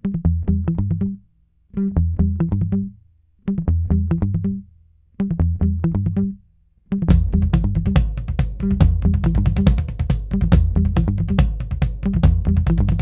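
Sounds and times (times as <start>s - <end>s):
plucked riff over bass line: 0.0s - 13.0s.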